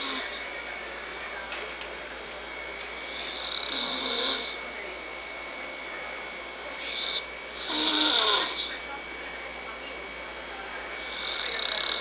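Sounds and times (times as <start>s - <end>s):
person snoring loudly: 0.0s - 0.4s, 3.0s - 4.6s, 6.8s - 8.7s, 11.0s - 12.0s.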